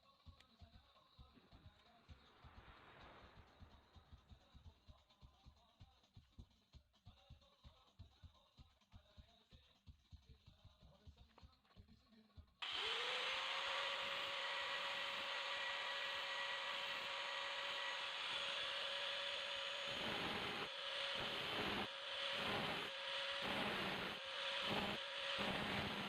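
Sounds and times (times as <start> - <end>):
hiss: 12.6 - 26.0
power tool motor whining: 12.6 - 26.0.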